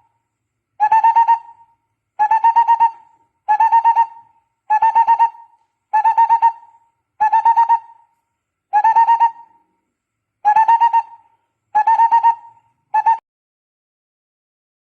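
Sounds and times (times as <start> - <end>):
barbet calling hollow notes: 2.2 - 8.0.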